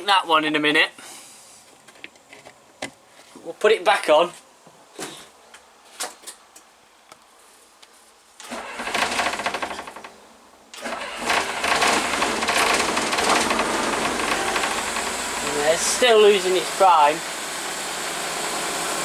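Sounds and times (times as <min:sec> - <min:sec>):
diesel engine cranking and starting: 0:08.4 - 0:19.0.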